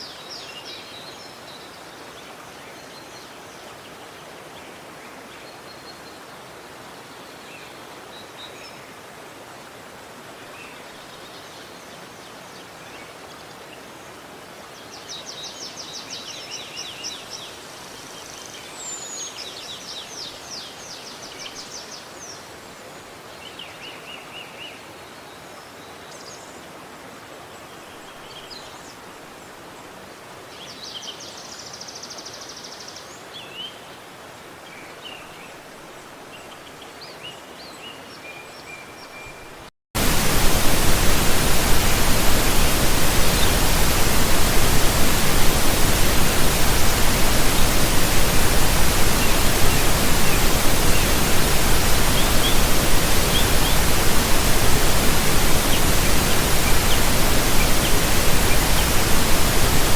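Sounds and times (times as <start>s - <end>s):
rush of water: 40.0s - 59.9s
small birds chirping: 40.0s - 59.9s.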